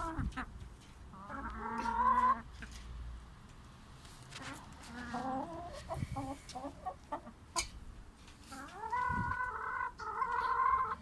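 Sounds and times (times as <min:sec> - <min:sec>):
chickens clucking: 0:00.0 - 0:11.0.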